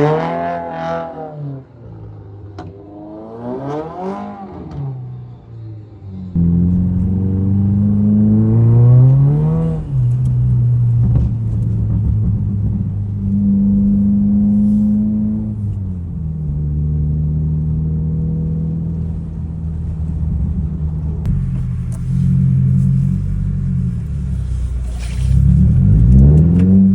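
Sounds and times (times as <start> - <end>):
car engine revving: 6.3 - 26.9.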